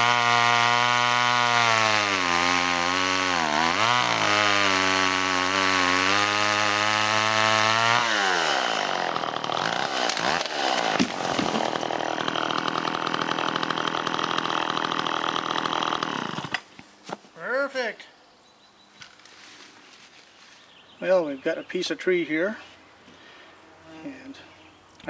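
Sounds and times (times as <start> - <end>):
chainsaw cutting: 0.0 - 16.8
sharp cracks: 8.0 - 16.8.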